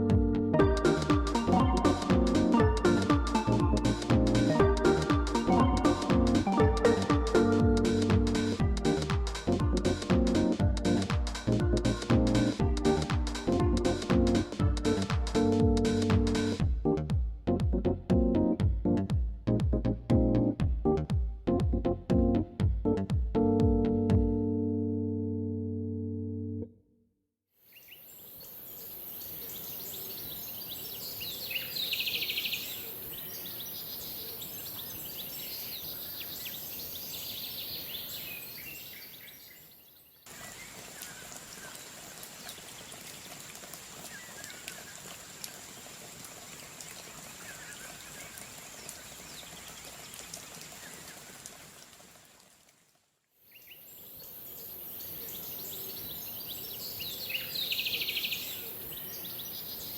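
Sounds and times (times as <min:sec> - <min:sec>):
birds chirping: 0:27.7 - 0:43.4, 0:53.5 - 0:59.9.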